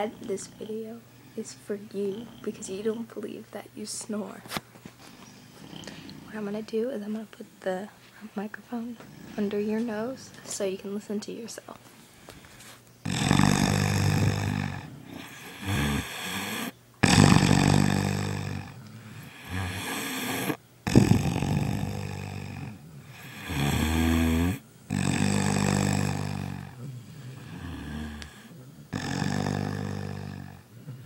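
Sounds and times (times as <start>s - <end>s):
man snoring loudly: 13.0s - 31.0s.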